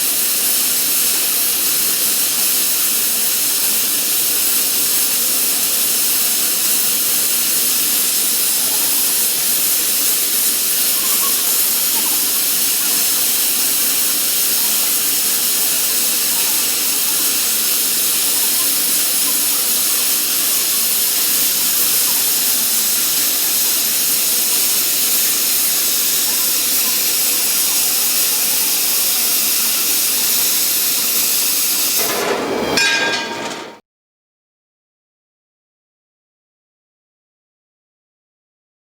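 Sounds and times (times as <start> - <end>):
plasma torch hissing: 0.0 - 32.8.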